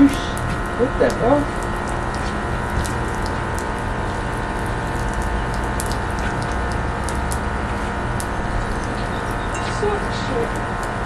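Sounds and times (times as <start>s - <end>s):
air conditioner humming: 0.0s - 11.0s.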